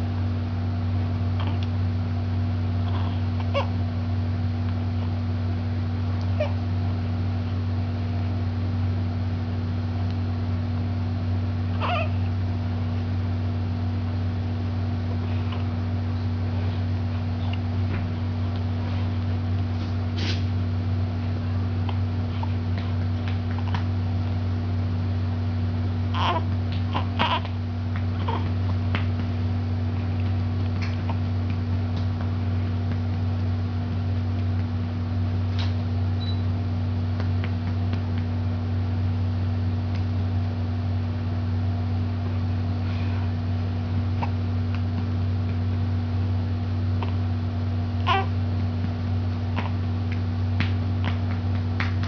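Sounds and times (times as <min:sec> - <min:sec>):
steady low hum: 0:00.0 - 0:52.0
baby vocal sounds: 0:01.4 - 0:01.7, 0:02.8 - 0:03.8, 0:06.3 - 0:06.6, 0:11.7 - 0:12.3, 0:26.1 - 0:27.6, 0:28.2 - 0:28.6, 0:48.0 - 0:48.3, 0:49.5 - 0:49.8.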